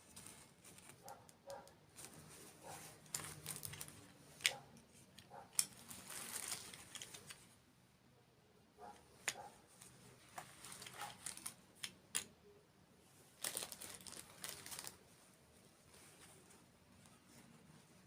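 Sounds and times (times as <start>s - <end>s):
crackling while eating: 0.0s - 1.8s, 2.6s - 7.4s, 9.3s - 12.0s, 13.4s - 15.0s.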